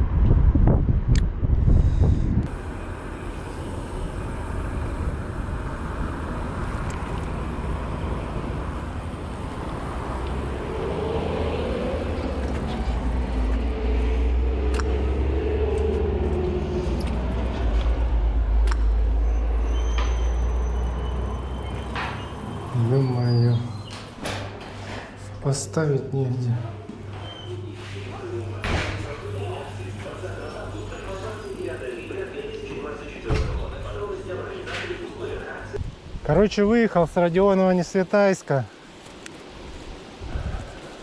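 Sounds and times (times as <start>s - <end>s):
wind buffeting microphone: 0.0s - 15.4s, 39.6s - 41.0s
low rumble: 0.0s - 23.0s
vehicle passing by: 2.1s - 25.1s.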